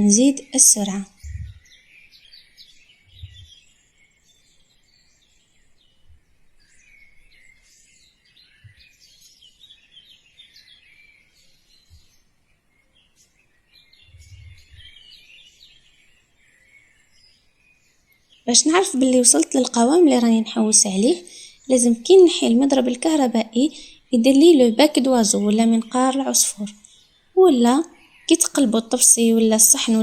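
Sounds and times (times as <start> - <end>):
faint birdsong chirps: 0.0 - 30.0
soft low thumps: 1.2 - 1.6, 3.1 - 3.5, 14.1 - 15.0.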